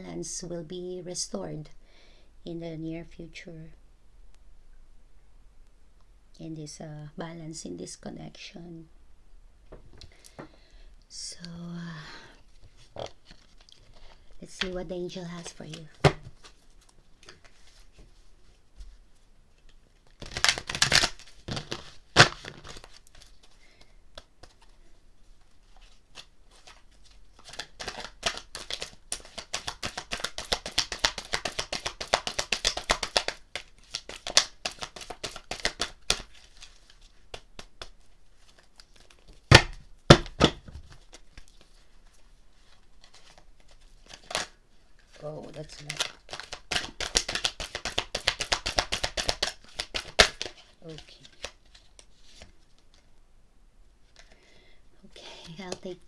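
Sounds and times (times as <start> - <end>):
cards being shuffled: 12.5 - 19.0, 19.6 - 53.1
rapid card flicks: 27.5 - 36.2, 45.8 - 50.5
sharp card snaps: 27.5 - 36.3, 45.7 - 51.6.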